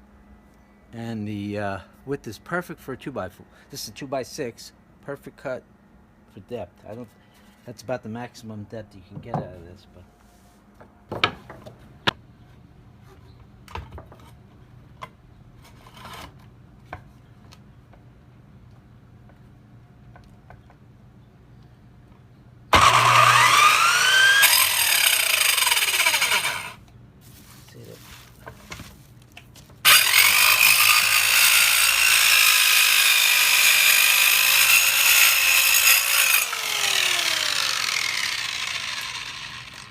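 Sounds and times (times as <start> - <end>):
circular saw cutting wood: 22.7 - 26.8, 29.8 - 39.9
short rustle: 27.2 - 29.6.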